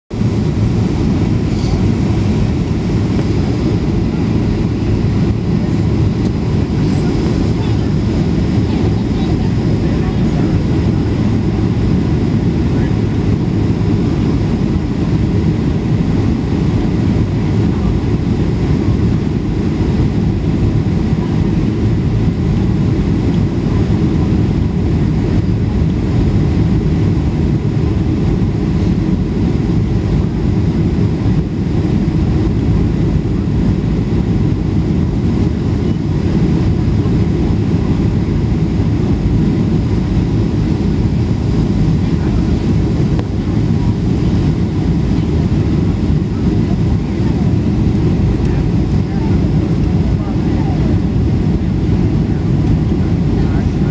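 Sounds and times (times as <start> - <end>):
rushing air: 0.1 - 21.0
airliner engines rumbling: 0.1 - 53.9.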